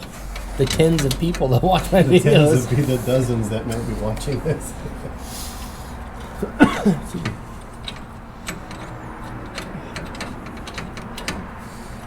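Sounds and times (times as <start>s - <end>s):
tools and parts clicking and knocking: 0.0s - 2.0s, 6.1s - 12.0s.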